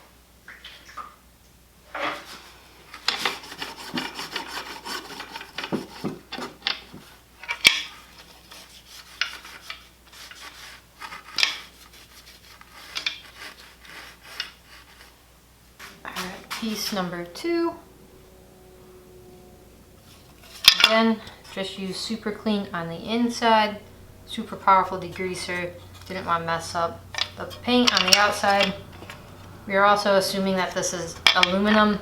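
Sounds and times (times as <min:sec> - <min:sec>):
scrubbing motor parts: 0:15.8 - 0:32.0.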